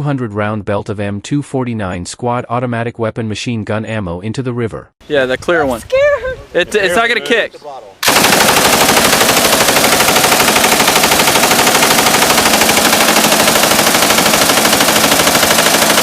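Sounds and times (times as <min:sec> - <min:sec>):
machine gun firing full-auto: 0:08.0 - 0:16.0.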